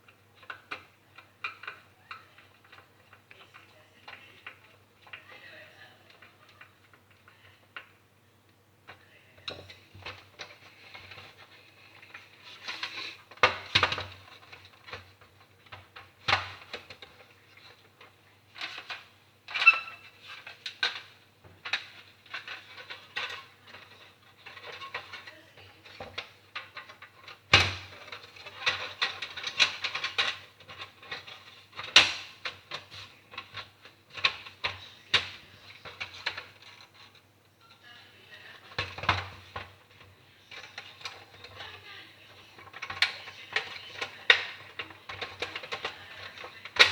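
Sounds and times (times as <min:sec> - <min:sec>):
plastic and metal parts clicking: 0:42.5 - 0:46.9.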